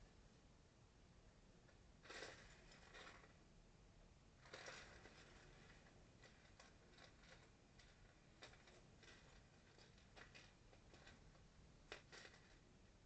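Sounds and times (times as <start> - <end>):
plastic pieces clicking: 4.4 - 12.7.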